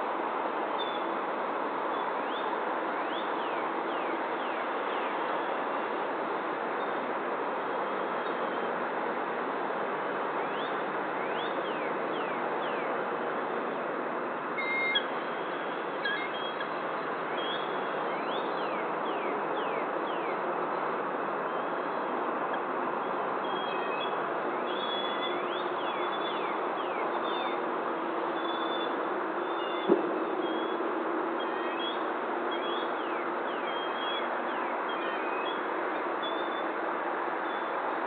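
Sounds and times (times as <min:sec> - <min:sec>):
bird calls: 0:14.6 - 0:16.8.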